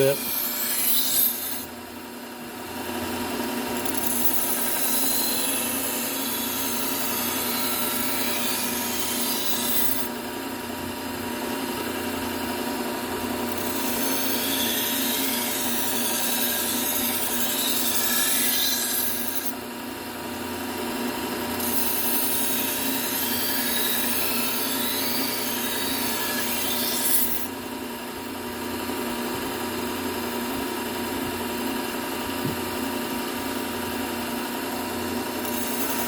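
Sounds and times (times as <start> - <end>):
knife grinding on belt: 0.0 - 1.7, 35.4 - 36.0.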